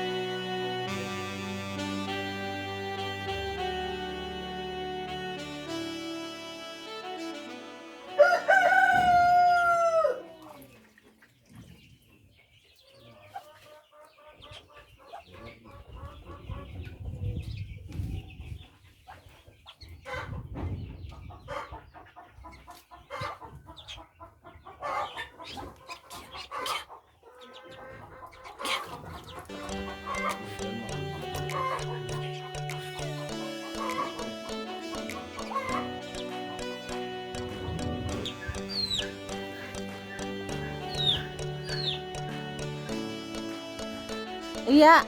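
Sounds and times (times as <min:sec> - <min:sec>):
hens clucking: 0:00.0 - 0:06.1, 0:08.1 - 0:45.0
rooster crowing: 0:08.1 - 0:10.5.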